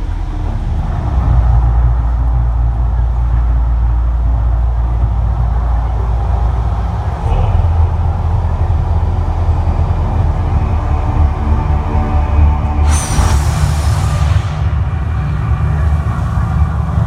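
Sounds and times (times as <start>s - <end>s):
crowd talking: 0.0s - 17.0s
deep steady rumble: 0.0s - 17.0s.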